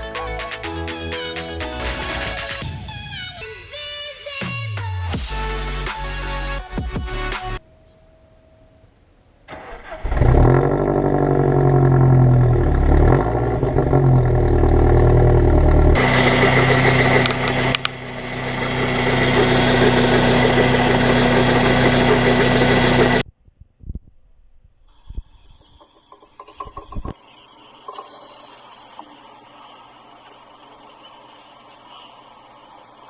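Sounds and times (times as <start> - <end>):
car engine cranking and starting: 9.5 - 23.2
engine revving: 9.8 - 23.2
engine knocking: 12.9 - 23.2.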